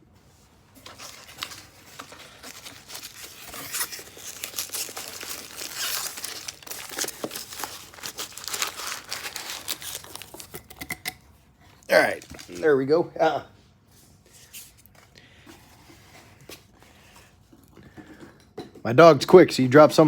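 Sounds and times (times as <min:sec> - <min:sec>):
packaging crinkling and tearing: 0:00.8 - 0:11.1, 0:11.8 - 0:12.8.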